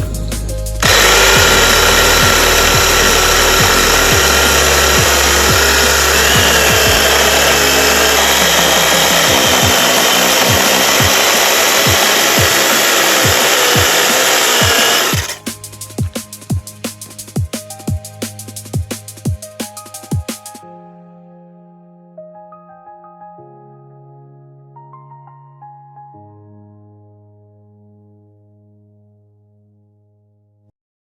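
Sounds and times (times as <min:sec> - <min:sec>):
chainsaw cutting wood: 0:00.8 - 0:15.5.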